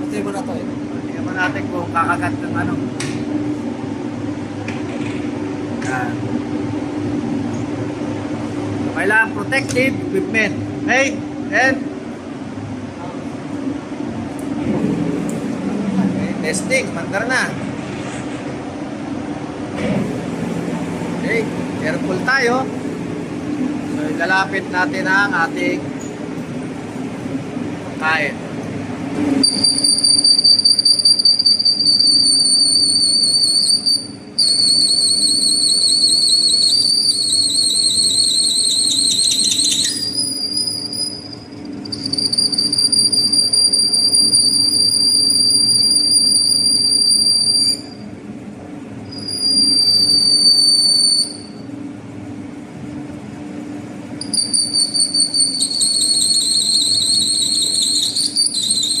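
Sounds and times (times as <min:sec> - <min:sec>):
lathe tool bit squealing on metal: 0:29.4 - 0:48.0, 0:49.1 - 0:51.6, 0:54.2 - 0:59.0.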